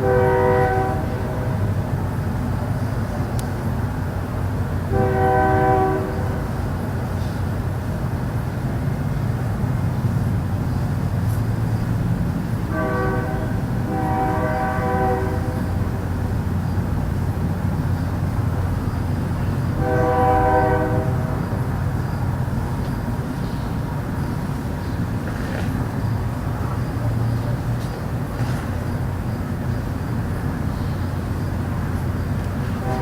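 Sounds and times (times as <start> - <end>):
distant horn blasts: 0.0 - 1.8, 4.9 - 6.6, 12.7 - 16.0, 19.5 - 21.8, 32.6 - 33.0.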